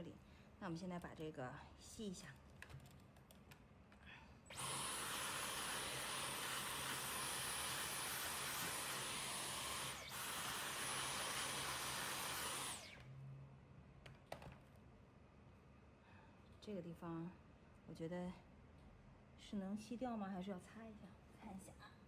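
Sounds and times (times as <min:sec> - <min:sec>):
vacuum cleaner whining: 0:04.5 - 0:13.2.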